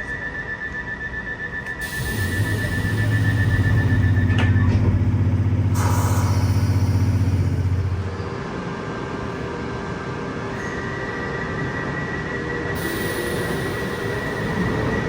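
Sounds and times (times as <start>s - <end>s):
pulsing high door-warning tone: 0.4s - 8.2s
train doors shutting knocks: 2.4s - 7.5s
short hiss of air: 5.8s - 7.1s.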